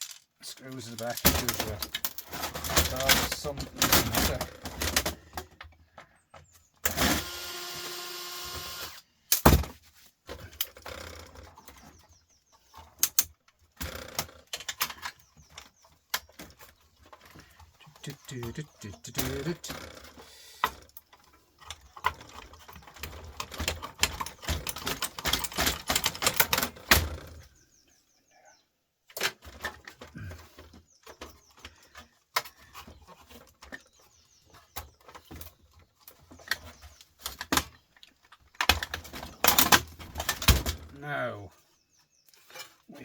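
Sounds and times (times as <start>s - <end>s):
small metal parts clicking: 0.0s - 5.0s.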